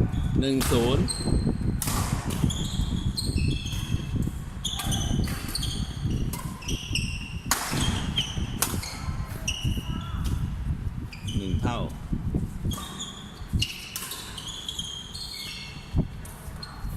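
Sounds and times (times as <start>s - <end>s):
shoes squeaking on floor: 2.4s - 10.2s, 11.1s - 11.9s, 12.6s - 16.9s
racket hitting ball: 7.4s - 8.8s.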